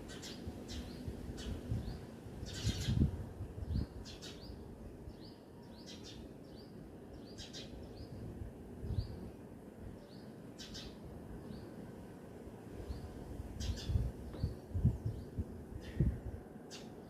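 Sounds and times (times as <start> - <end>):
small birds chirping: 0.0 - 9.3, 9.9 - 11.9, 12.8 - 17.0
low outdoor rumble: 7.9 - 17.0.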